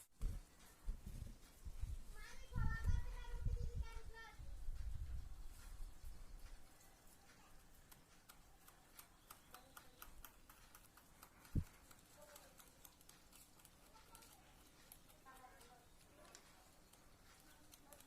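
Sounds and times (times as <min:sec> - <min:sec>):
faint irregular ticks: 0:04.7 - 0:18.0.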